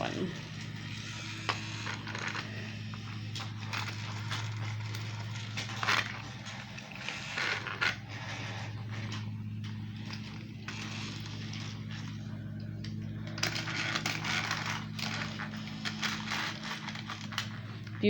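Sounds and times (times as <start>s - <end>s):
lawnmower humming outside: 0.0s - 18.0s
plastic toy trains clattering: 10.0s - 18.0s.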